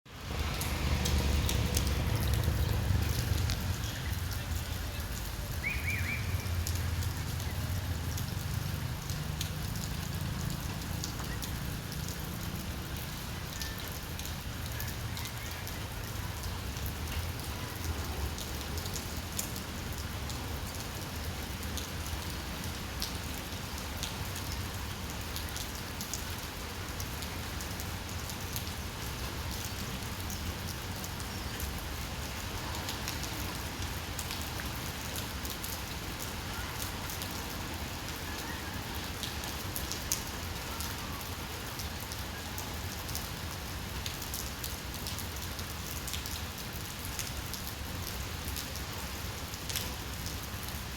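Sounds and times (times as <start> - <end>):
rain hissing: 0.1 - 25.3
raindrops ticking on surfaces: 0.1 - 50.9.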